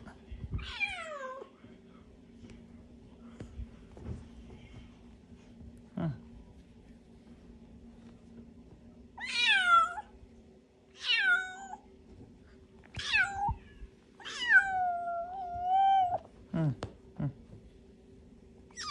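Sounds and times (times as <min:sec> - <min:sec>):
cat meowing: 0:09.2 - 0:10.1, 0:11.0 - 0:11.8, 0:12.9 - 0:16.2.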